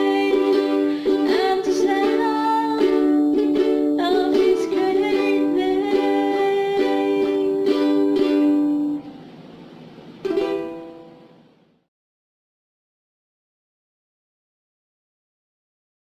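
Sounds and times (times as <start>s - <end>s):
strummed string instrument chords: 0.0s - 11.6s.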